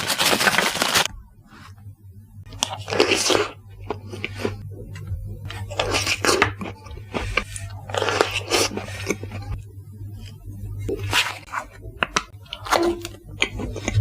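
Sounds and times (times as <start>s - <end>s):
low steady hum: 0.0s - 14.0s
moist squishy chewing: 2.5s - 9.6s, 10.9s - 14.0s.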